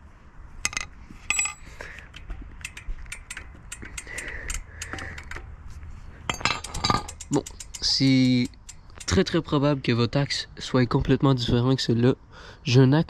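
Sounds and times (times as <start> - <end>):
allen key clicking on bolt: 0.7 - 5.5, 6.3 - 9.4.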